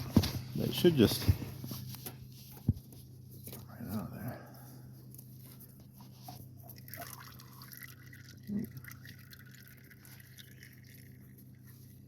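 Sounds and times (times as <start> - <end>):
oil trickling and dripping: 6.4 - 12.0.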